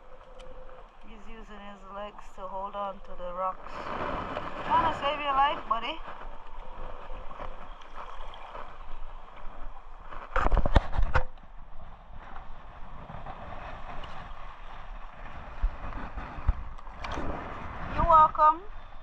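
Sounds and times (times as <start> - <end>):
wind noise on microphone: 0.0 - 19.0
water washing against rocks: 2.2 - 10.7.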